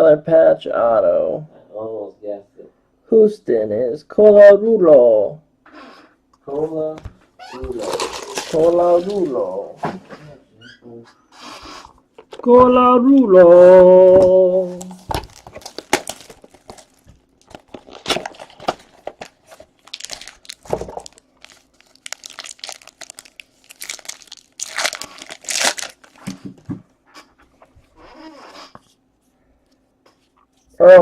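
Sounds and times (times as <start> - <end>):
cards and packaging rustling: 7.6 - 9.6, 14.6 - 26.7
wrappers crinkling and tearing: 7.6 - 9.6, 14.6 - 26.4.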